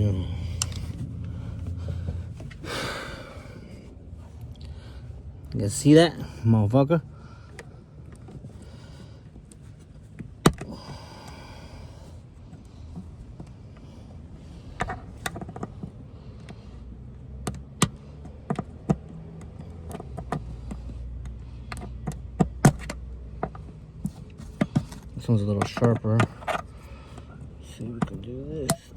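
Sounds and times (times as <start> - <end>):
pry tools clicking on plastic clips: 17.4 - 20.4.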